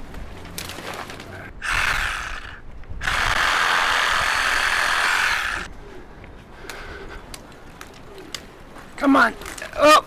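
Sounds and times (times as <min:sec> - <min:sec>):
power saw cutting branch: 0:01.6 - 0:05.7.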